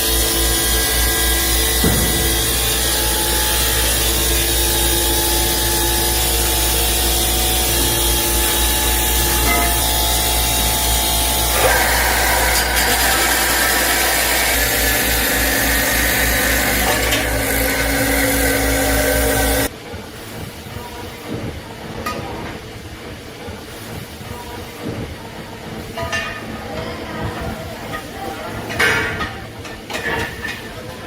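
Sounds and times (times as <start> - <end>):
machinery whining: 0.0 - 19.7.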